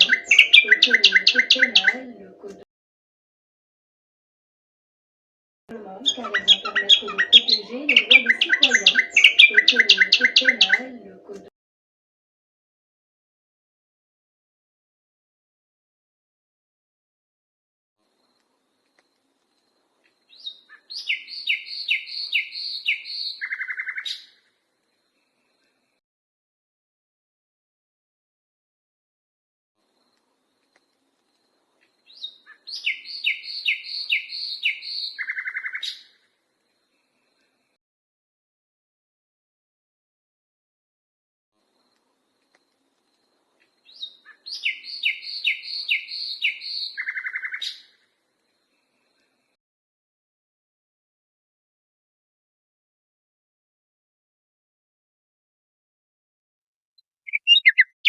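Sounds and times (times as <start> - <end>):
nightingale singing: 0.0 - 2.2, 5.7 - 11.1, 18.1 - 24.4, 30.0 - 37.7, 41.7 - 49.5, 57.3 - 58.0.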